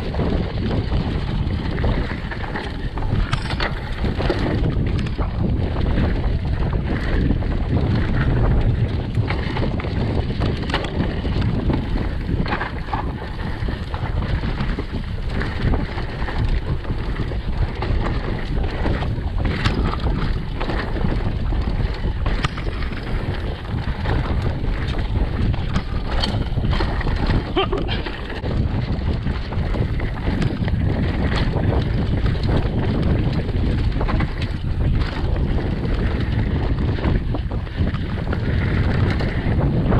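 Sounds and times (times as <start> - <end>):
bike clicks and knocks: 0.0 - 39.9
bike tyre roar: 0.0 - 39.9
wind on microphone: 0.0 - 39.9.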